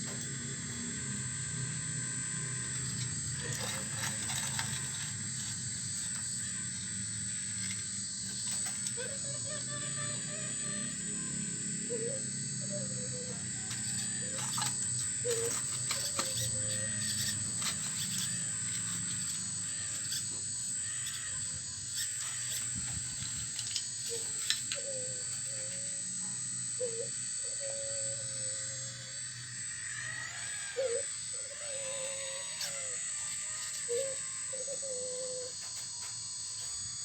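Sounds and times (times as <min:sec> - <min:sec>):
toy excavator motors whining: 0:00.0 - 0:37.0
short squeaks: 0:13.6 - 0:24.8.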